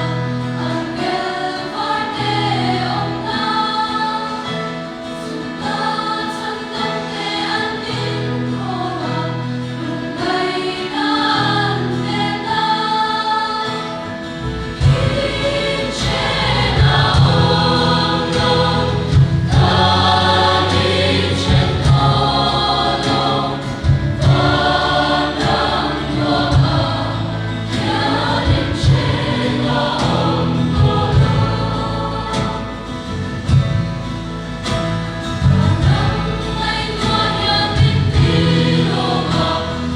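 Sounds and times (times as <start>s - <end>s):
choir singing gospel song: 0.0s - 39.9s
backing bass and beat: 14.7s - 39.9s.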